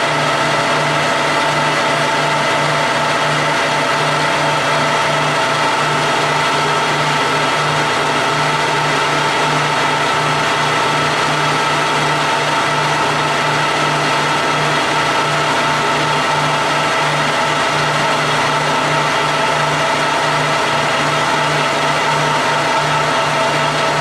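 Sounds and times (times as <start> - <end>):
lathe whining: 0.0 - 24.0.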